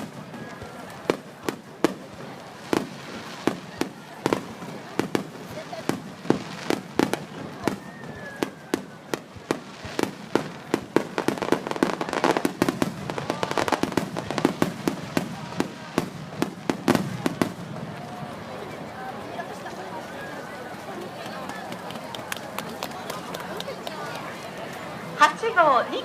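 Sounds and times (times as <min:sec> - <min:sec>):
fireworks bangs and cracks: 0:00.0 - 0:19.7.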